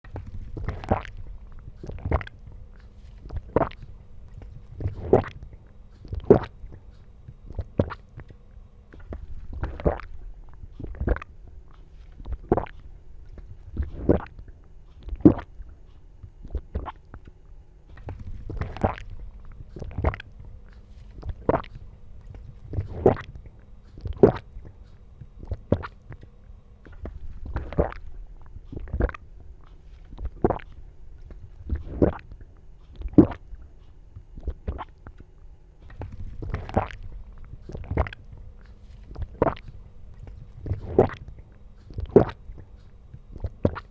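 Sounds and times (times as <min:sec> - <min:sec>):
person gulping: 0:00.1 - 0:10.2, 0:18.0 - 0:28.1, 0:35.9 - 0:43.9.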